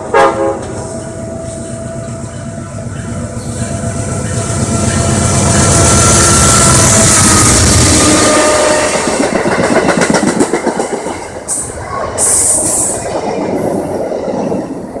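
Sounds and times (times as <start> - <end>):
train wheels clattering over rail joints: 9.0 - 15.0.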